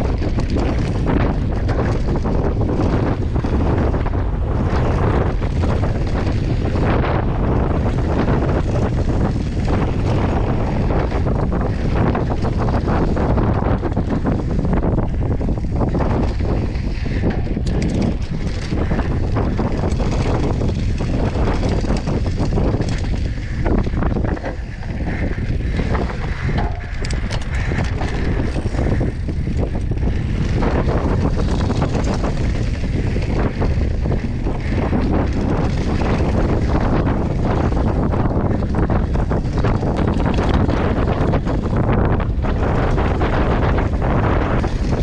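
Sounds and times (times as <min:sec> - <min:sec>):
tyres rumbling on rough ground: 0:00.0 - 0:45.0
wind buffeting microphone: 0:00.0 - 0:45.0.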